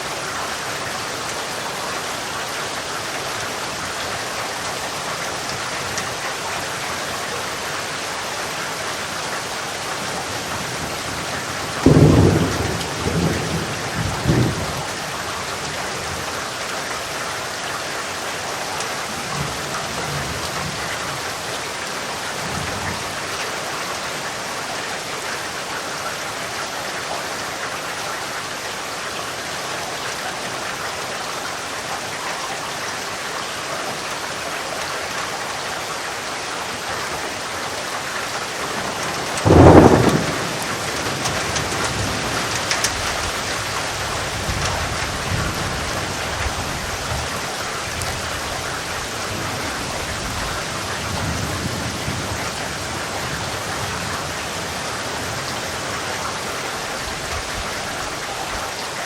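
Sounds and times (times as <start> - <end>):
steady rain falling: 0.0 - 59.0
thunderclap rumbling: 10.6 - 15.0, 38.6 - 47.3
low rolls of thunder: 10.8 - 15.0, 38.6 - 46.7.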